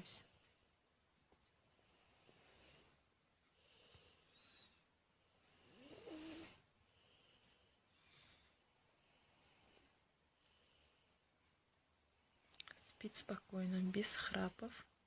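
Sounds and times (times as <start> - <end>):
child breathing softly: 1.5 - 11.3.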